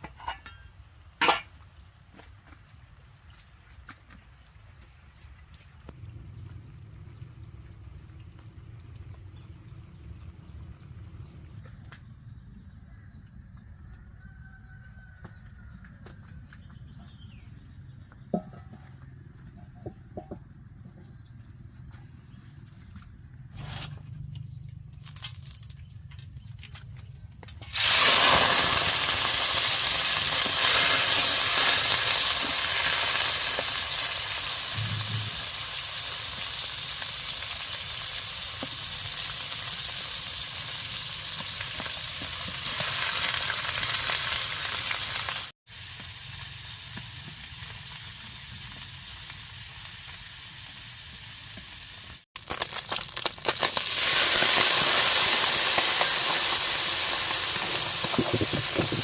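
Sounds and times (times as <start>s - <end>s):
high insect trill: 0.0s - 59.0s
food sizzling in hot oil: 1.2s - 1.5s, 27.6s - 59.0s.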